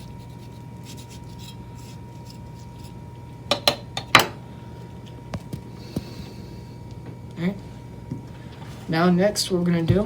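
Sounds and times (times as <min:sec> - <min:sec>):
knife scraping vegetable: 0:00.0 - 0:03.1.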